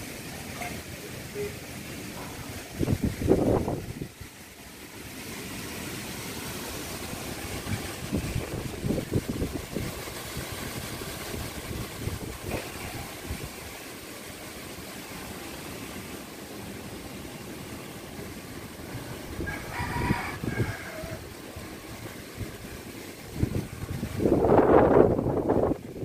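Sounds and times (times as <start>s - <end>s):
wind gusts buffeting microphone: 2.0s - 4.5s, 6.2s - 14.5s, 18.0s - 26.0s
strong wind blowing: 2.2s - 4.4s, 6.5s - 13.8s, 18.8s - 26.0s.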